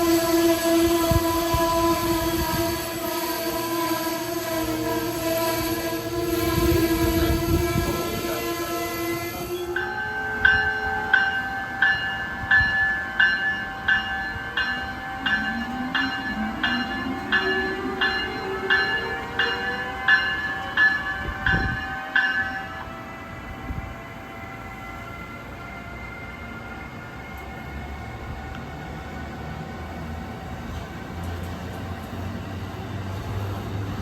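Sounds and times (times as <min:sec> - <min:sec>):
train motors whining: 0:00.0 - 0:09.8
train bell ringing: 0:00.0 - 0:28.6.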